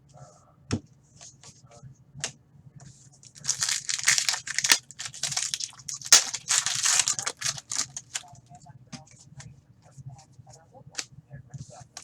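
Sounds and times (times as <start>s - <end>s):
foil wrappers crinkling: 3.3s - 8.3s.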